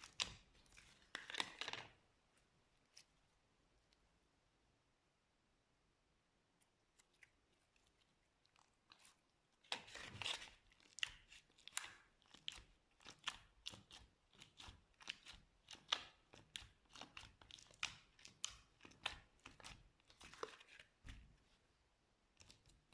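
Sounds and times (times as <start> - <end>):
wet sticky slime crackling: 6.9 - 21.1.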